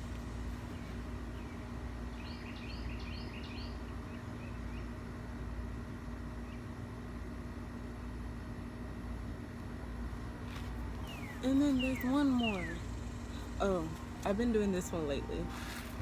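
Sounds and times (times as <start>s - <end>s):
faint hum: 0.0s - 16.0s
bird chirping: 0.7s - 5.0s.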